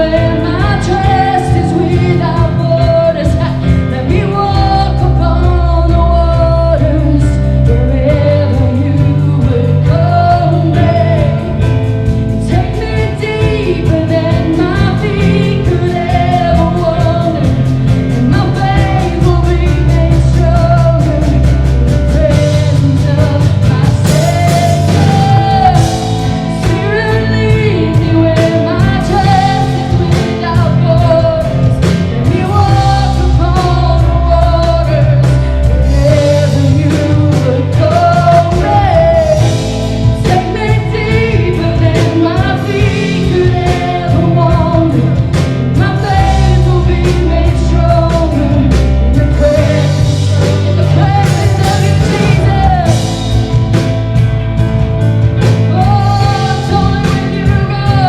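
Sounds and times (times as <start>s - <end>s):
steady drum beat: 0.0s - 58.0s
sustained bass notes: 0.0s - 58.0s
worship band singing: 0.0s - 58.0s.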